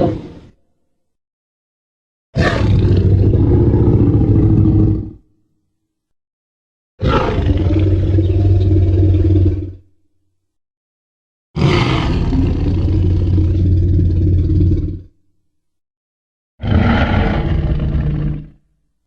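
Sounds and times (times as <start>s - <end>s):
dinosaur roaring: 2.4s - 5.2s, 7.0s - 9.8s, 11.6s - 15.1s, 16.6s - 18.6s.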